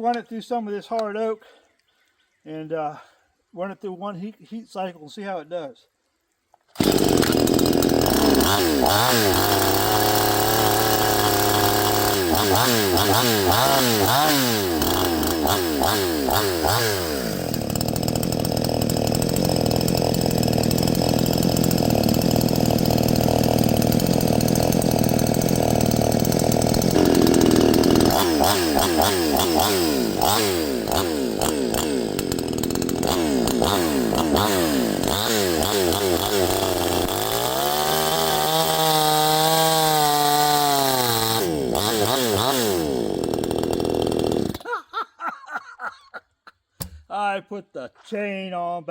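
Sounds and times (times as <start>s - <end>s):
chainsaw revving: 6.8s - 45.4s.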